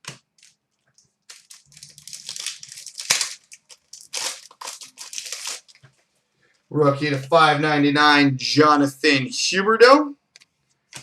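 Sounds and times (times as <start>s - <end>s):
wrappers crinkling: 0.0s - 6.0s.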